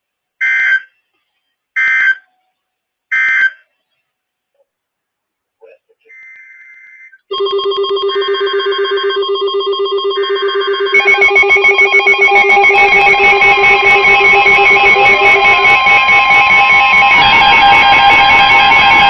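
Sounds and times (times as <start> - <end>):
data bursts: 6.1 - 19.0
higher alarm tones: 6.1 - 19.0
pulsing alarm tone: 6.2 - 19.0.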